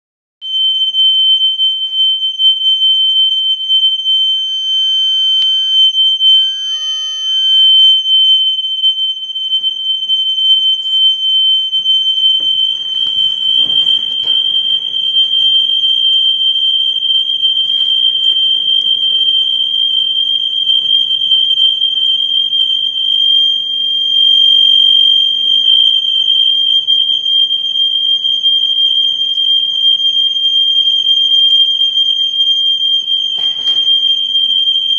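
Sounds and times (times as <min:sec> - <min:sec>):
high-pitched electronic alarm tone: 0:03.8 - 0:25.4.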